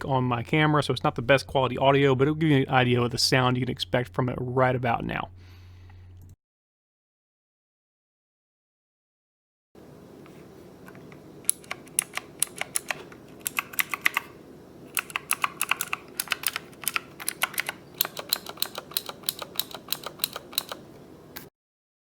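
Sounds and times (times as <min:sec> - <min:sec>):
faint steady hum: 0:00.0 - 0:06.4, 0:09.8 - 0:21.5
mechanical keyboard typing: 0:11.4 - 0:20.9.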